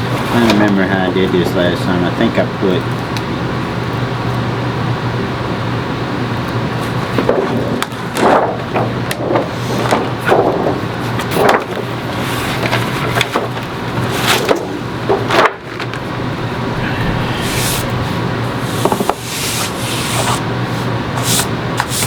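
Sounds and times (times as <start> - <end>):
fan-like hum: 0.0 - 22.0.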